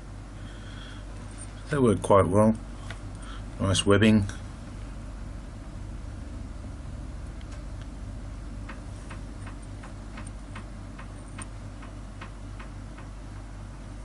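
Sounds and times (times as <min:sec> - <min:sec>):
low steady hum: 0:00.0 - 0:14.0
light even ticking: 0:08.6 - 0:13.2.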